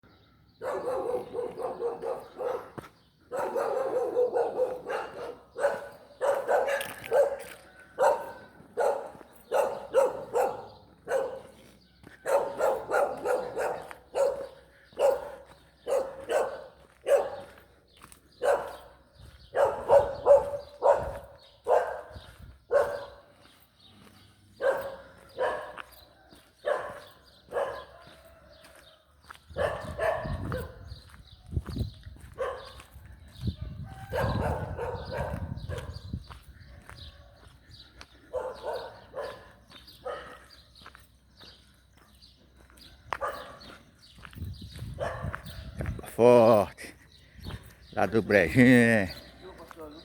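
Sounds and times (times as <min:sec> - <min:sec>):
dog barking: 0:00.6 - 0:17.6, 0:18.4 - 0:28.7, 0:29.5 - 0:31.1, 0:32.2 - 0:36.1, 0:36.7 - 0:37.6, 0:38.2 - 0:41.0, 0:43.0 - 0:43.8, 0:44.9 - 0:45.8.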